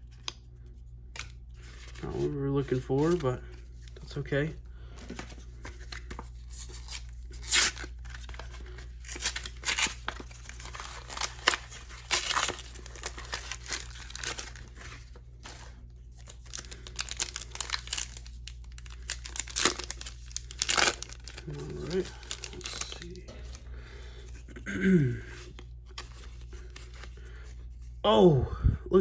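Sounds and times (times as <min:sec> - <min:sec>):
packaging being torn and crinkled: 0:05.8 - 0:23.6.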